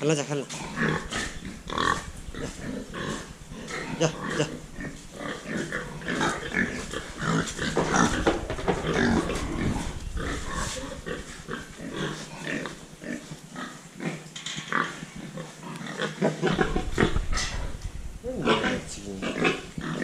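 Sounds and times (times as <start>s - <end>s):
pigs grunting: 0.4s - 20.0s.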